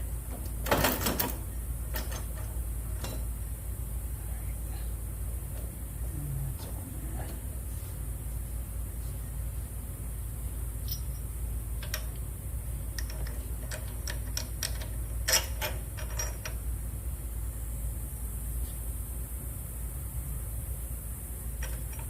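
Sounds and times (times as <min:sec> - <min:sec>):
steady low hum: 0:00.0 - 0:22.0
metallic clicks on chain: 0:13.0 - 0:16.6.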